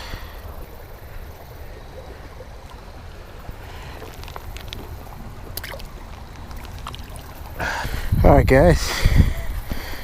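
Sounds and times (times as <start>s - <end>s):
creek water running and lapping: 0.0s - 10.0s
wind rumble on microphone: 0.0s - 10.0s
faint ticks: 3.8s - 7.3s.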